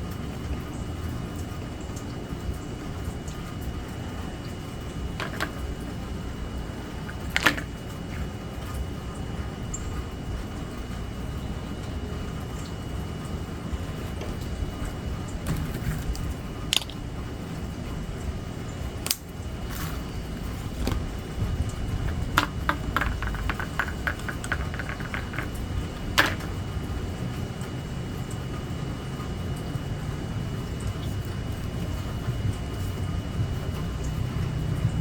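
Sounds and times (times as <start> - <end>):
small taps: 22.1 - 26.5.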